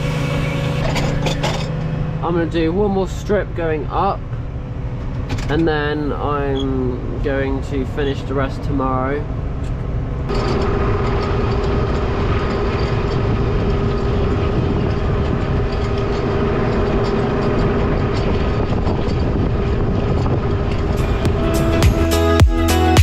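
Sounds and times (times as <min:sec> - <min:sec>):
tractor engine under load: 0:00.0 - 0:21.8.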